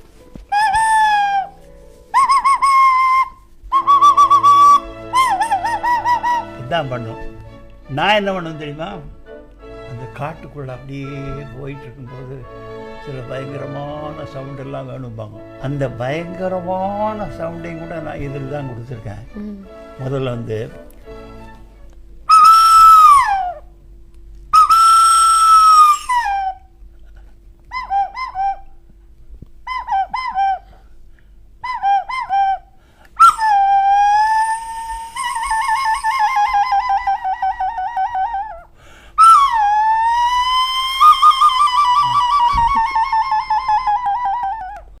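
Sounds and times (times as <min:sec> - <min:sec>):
hand-held whistle calls: 0:00.0 - 0:08.6, 0:22.3 - 0:23.7, 0:24.5 - 0:26.7, 0:27.7 - 0:28.8, 0:29.6 - 0:30.8, 0:31.6 - 0:45.0.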